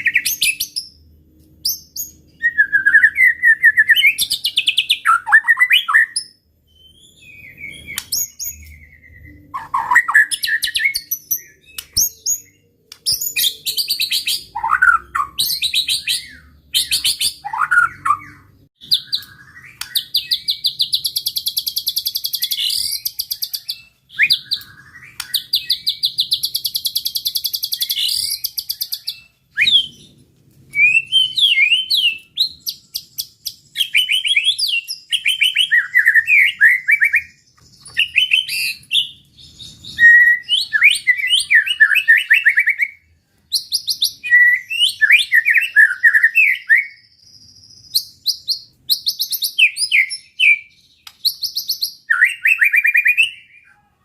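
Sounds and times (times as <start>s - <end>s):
bird whistled phrases: 2.3s - 30.1s, 30.7s - 43.0s, 43.6s - 53.9s.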